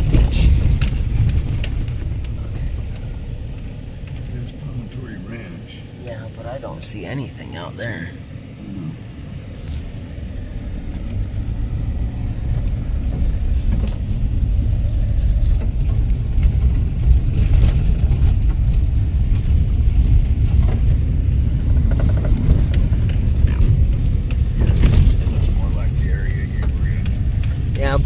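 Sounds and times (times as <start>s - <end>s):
vehicle rumble on rough road: 0.0s - 28.0s
small rattles and clicks: 12.5s - 28.0s.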